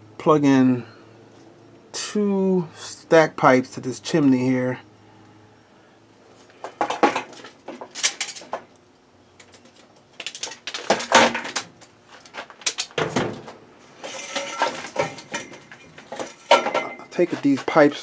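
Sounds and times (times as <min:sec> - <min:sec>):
metallic clinking and knocking: 0:14.0 - 0:17.8.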